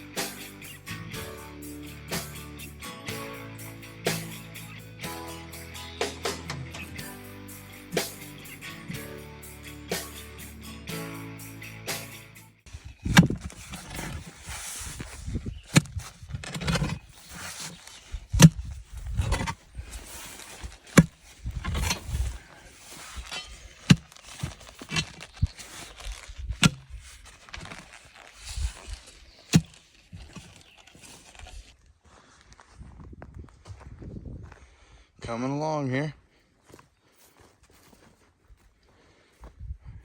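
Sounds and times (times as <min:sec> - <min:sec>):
soil crunching and scraping: 0:12.0 - 0:33.9
digging tool thunking into dirt: 0:13.0 - 0:14.2, 0:15.7 - 0:17.5, 0:23.1 - 0:25.2, 0:26.6 - 0:26.9, 0:29.5 - 0:29.8.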